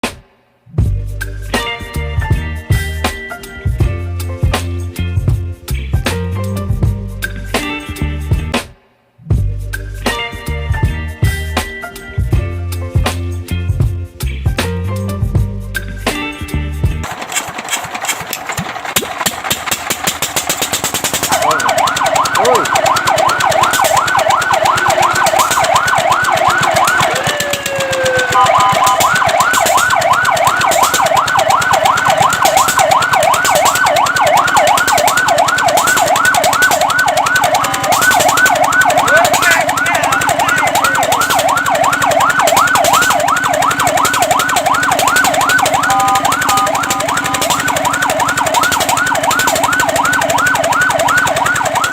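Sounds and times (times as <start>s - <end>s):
rapid clatter: 17.0s - 51.9s
electronic siren yelping: 21.2s - 51.9s.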